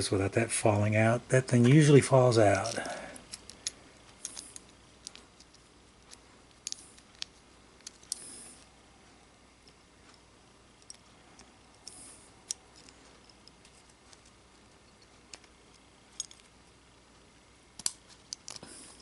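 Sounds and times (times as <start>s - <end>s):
small steel parts clicking: 2.5s - 8.3s, 10.8s - 16.6s, 17.8s - 19.0s.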